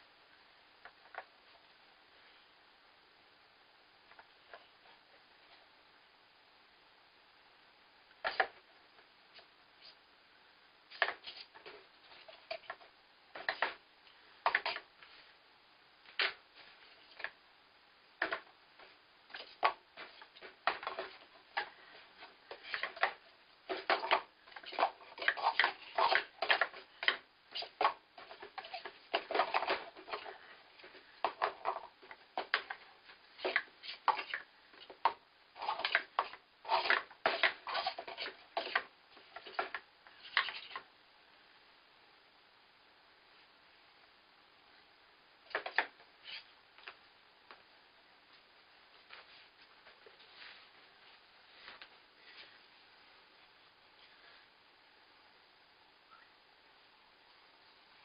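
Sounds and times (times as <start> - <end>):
plastic cups clattering: 18.2 - 32.8, 33.4 - 40.8.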